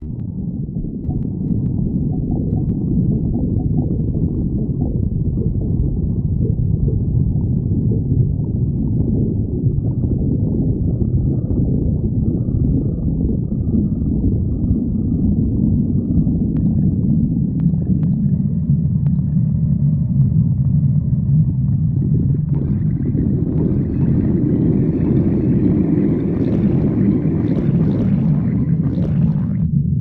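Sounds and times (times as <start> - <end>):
stomach growling: 0.0 - 30.0.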